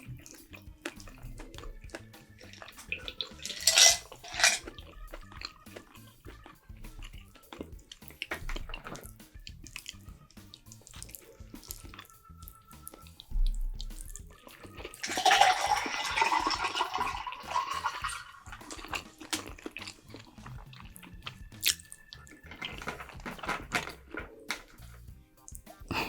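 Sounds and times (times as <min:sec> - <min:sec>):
chewing: 0:00.0 - 0:26.0
wet slurp: 0:14.0 - 0:22.8.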